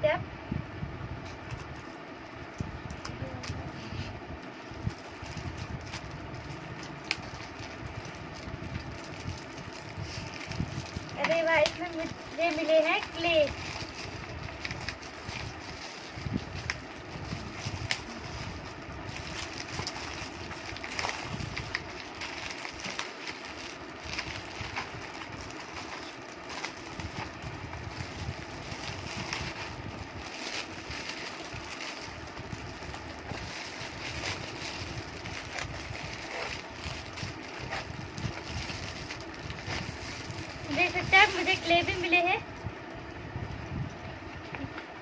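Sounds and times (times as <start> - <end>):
microphone handling rumble: 2.4 - 22.9.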